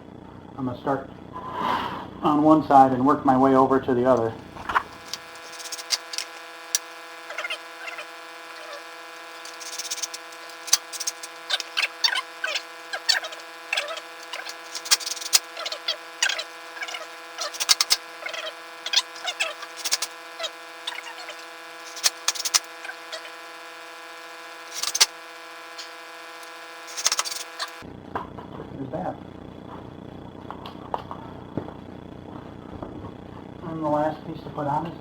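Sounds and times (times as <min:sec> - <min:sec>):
steady background hum: 0:00.0 - 0:35.0
metal and wood squeaking: 0:04.5 - 0:23.5, 0:24.6 - 0:27.8.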